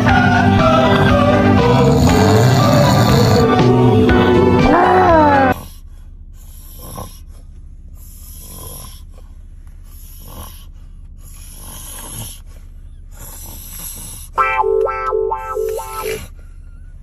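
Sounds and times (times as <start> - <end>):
person snoring: 0.0 - 5.8, 8.0 - 9.1, 9.9 - 10.7, 11.3 - 12.4.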